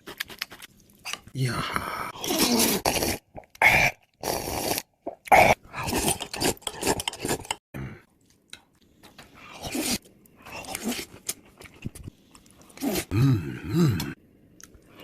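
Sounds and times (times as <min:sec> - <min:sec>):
person chewing food: 0:10.0 - 0:12.8.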